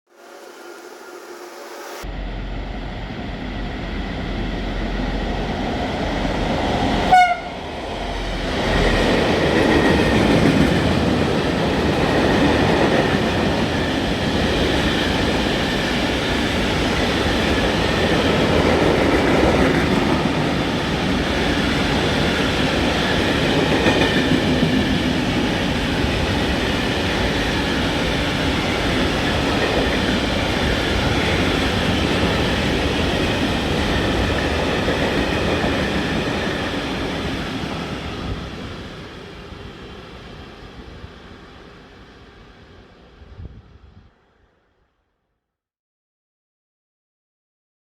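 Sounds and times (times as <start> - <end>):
diesel locomotive: 0.1 - 44.1
train horn blast: 7.0 - 7.6.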